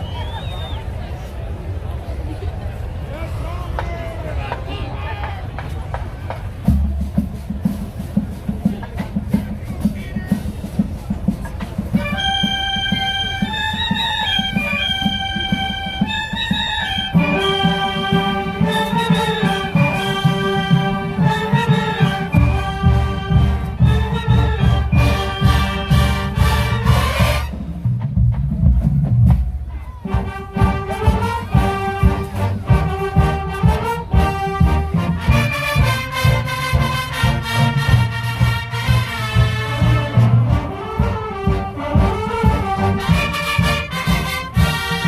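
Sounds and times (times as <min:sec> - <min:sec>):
steady drum beat: 0:04.5 - 0:45.0
brass sustained chords: 0:17.2 - 0:27.6, 0:30.1 - 0:45.0.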